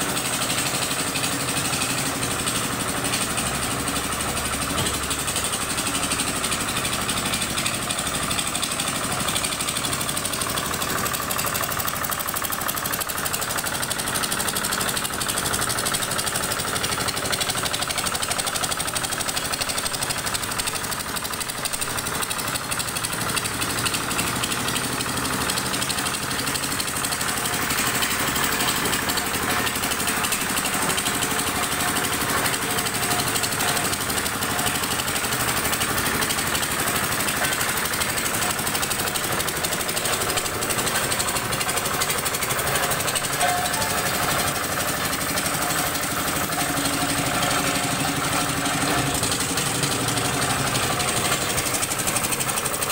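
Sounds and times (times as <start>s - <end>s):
vibratory roller rattling: 22.3s - 52.9s.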